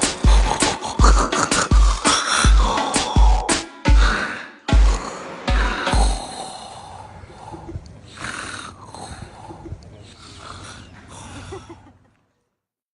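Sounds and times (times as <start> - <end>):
deep beat thumps: 0.0 - 6.4
man snoring: 0.0 - 11.4.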